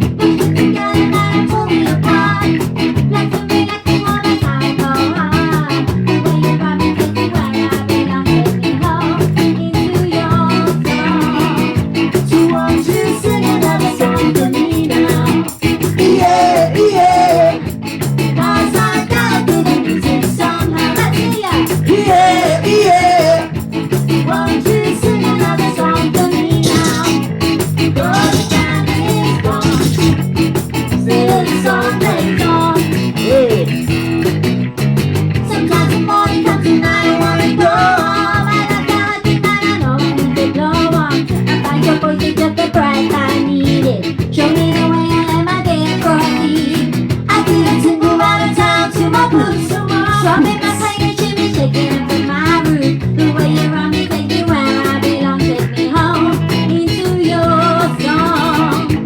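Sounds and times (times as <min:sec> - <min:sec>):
person singing: 0:00.0 - 0:34.2, 0:35.4 - 0:59.0
live ska-punk band: 0:00.0 - 0:59.0.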